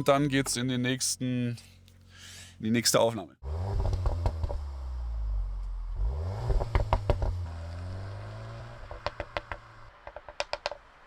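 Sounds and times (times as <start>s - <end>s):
car engine revving: 3.4s - 9.9s
exhaust pops and crackles: 3.7s - 4.8s, 5.5s - 8.0s, 8.6s - 11.0s.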